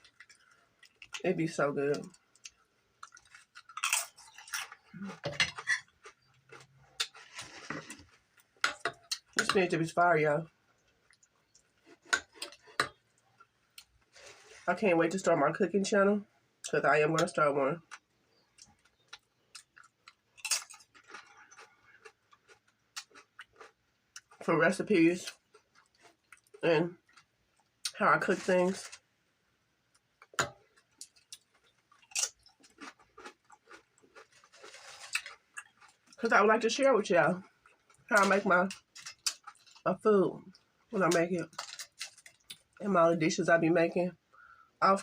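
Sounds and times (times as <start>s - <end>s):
crunchy chewing: 2.0s - 9.4s, 10.5s - 14.7s, 17.8s - 24.4s, 25.2s - 27.9s, 29.9s - 36.2s, 37.4s - 39.9s.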